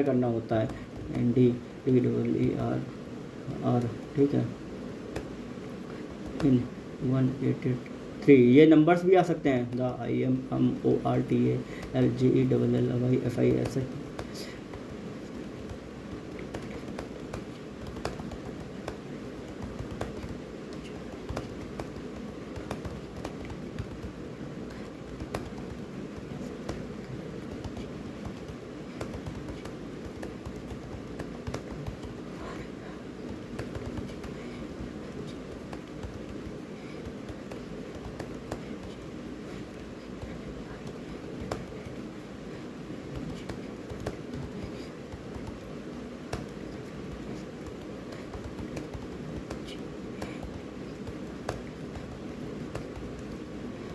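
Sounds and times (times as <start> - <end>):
low background hum: 0.0 - 53.9
fast keyboard typing: 11.0 - 32.6, 33.2 - 42.0.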